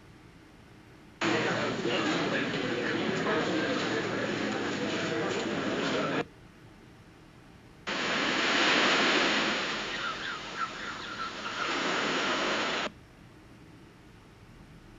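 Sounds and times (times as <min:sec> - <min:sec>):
surf-like rushing noise: 0:01.2 - 0:06.2, 0:07.9 - 0:12.9.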